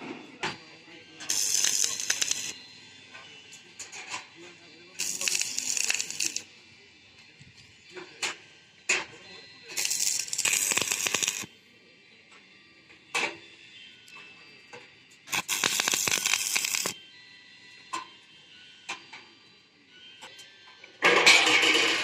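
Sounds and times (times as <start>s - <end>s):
welding arc crackling: 1.3s - 2.6s, 5.0s - 6.4s, 9.7s - 11.5s, 15.3s - 17.0s.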